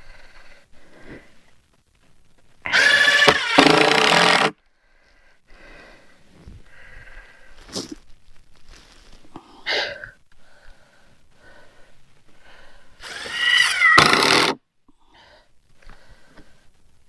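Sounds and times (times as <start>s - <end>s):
faint breathing: 0.0s - 1.7s, 4.6s - 8.0s, 8.7s - 13.4s, 14.9s - 17.0s
power drill driving screw into wood: 2.7s - 4.6s, 13.0s - 14.6s.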